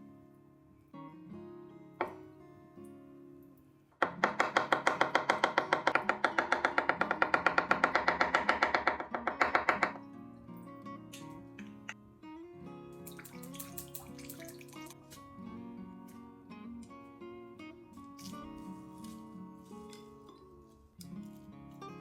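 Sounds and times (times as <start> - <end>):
acoustic guitar music: 0.0 - 22.0.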